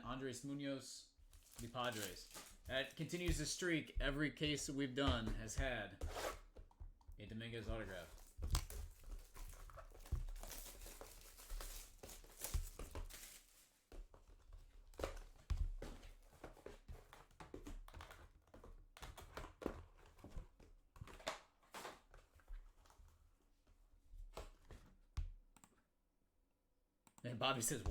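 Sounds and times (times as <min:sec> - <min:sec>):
plastic packaging crinkling: 0:01.3 - 0:03.4, 0:07.9 - 0:13.8.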